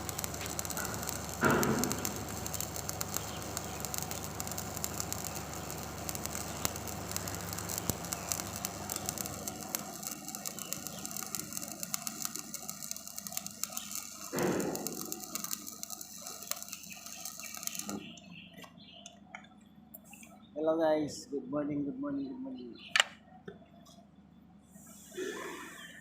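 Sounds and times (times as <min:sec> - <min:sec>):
arc welding crackle and hiss: 0:00.0 - 0:18.8, 0:24.7 - 0:26.0.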